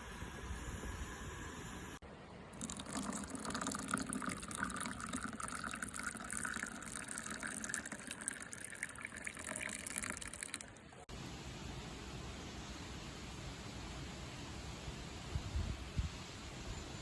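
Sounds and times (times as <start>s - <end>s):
water running and gushing: 2.6s - 11.1s
steady hiss: 11.1s - 17.0s.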